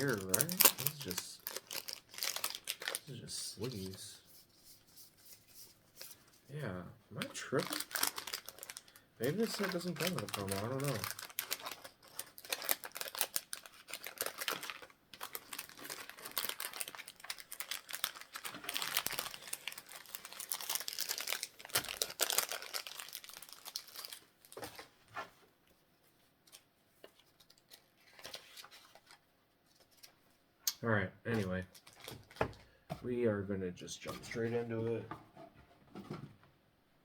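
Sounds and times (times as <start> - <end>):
plastic tearing: 0.0 - 3.8, 7.2 - 24.9, 31.7 - 32.5
plastic packaging crinkling: 0.0 - 4.1, 7.2 - 25.0, 31.4 - 32.6.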